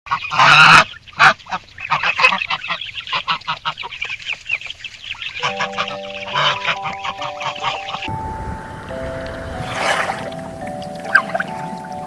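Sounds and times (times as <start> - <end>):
geese honking: 0.1 - 4.2, 5.1 - 12.0
steady music: 5.4 - 12.0.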